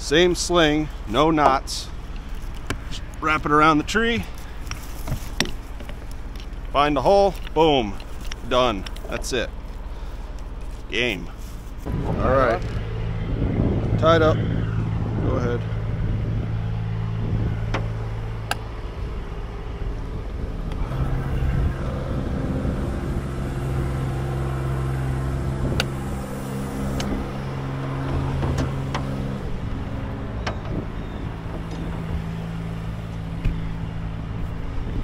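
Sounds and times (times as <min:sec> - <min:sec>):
lift engine running: 0:11.9 - 0:35.0.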